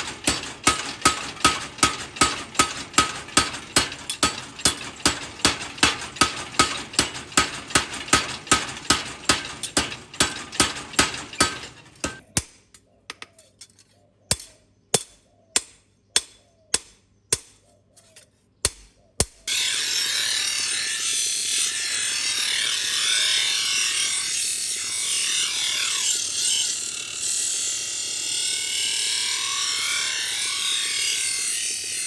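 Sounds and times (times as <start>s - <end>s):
hammer striking steel on anvil: 0.0s - 12.6s.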